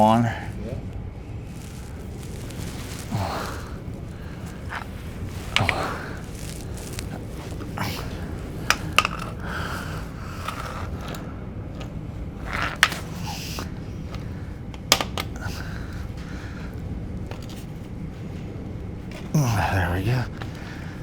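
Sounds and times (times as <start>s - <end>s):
steady low hum: 0.0s - 21.0s
tools clicking and knocking: 14.8s - 15.4s.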